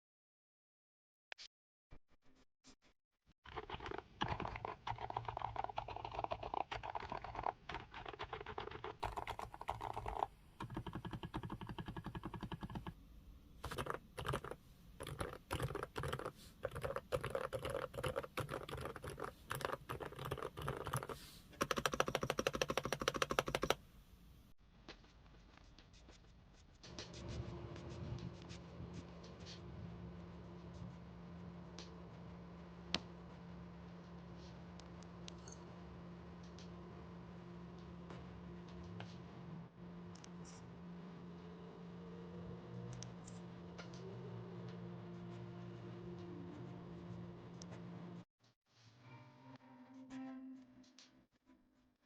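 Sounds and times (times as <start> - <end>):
fast typing on keyboard: 3.5 - 13.0, 13.6 - 23.8.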